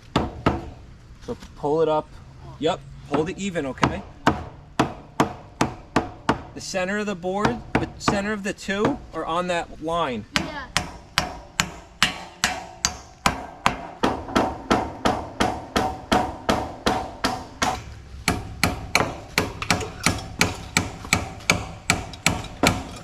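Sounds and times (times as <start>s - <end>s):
hammer driving nails into wood: 10.8s - 23.0s.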